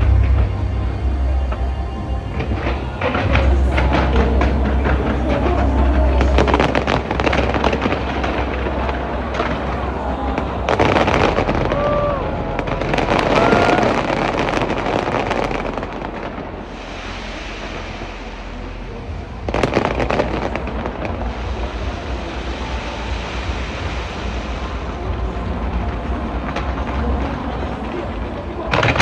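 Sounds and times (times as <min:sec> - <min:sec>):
fireworks crackling and banging: 0:00.0 - 0:29.0
low rumble of booms: 0:00.0 - 0:29.0.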